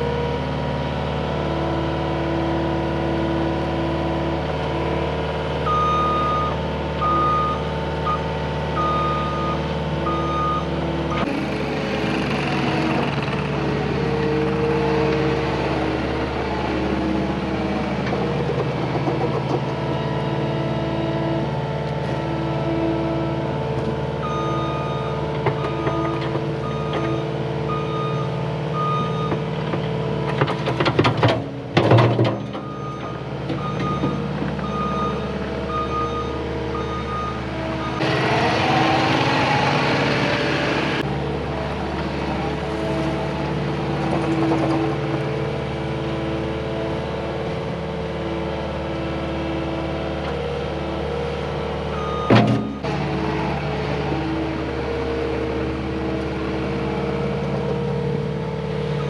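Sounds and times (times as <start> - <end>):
diesel engine running: 0.0 - 59.0
backup alarm beeping: 32.6 - 38.1.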